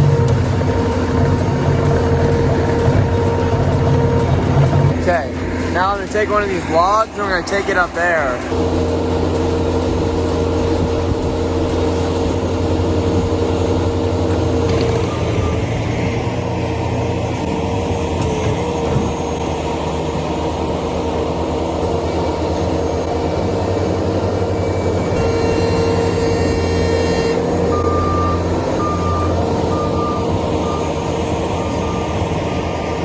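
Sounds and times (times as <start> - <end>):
backup alarm beeping: 0.0 - 12.7, 25.2 - 32.6
diesel engine running: 0.0 - 33.0.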